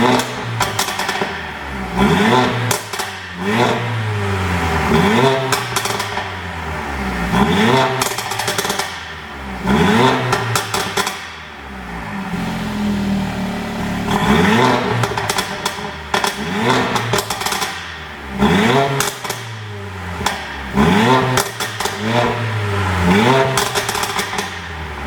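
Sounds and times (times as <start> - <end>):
exhaust cracks and pops: 0.0 - 1.4, 2.6 - 3.6, 5.5 - 6.4, 8.0 - 9.1, 10.2 - 11.4, 14.1 - 19.6, 20.2 - 22.3, 23.2 - 24.8
car engine revving: 0.0 - 25.0.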